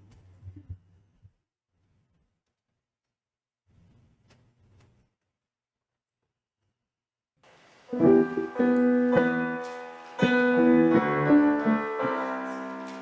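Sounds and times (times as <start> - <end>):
piano chords: 7.9 - 13.0.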